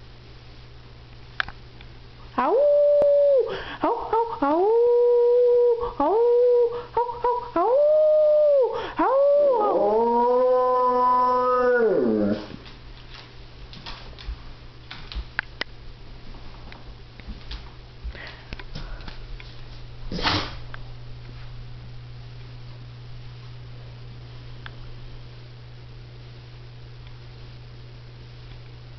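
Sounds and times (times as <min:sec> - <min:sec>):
dog howling: 0:02.4 - 0:12.6.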